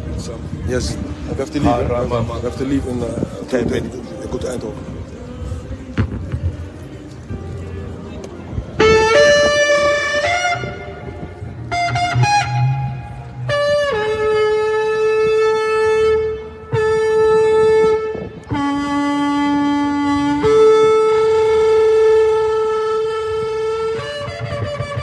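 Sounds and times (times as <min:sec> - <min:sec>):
ram's horn blasts: 0:08.6 - 0:25.0.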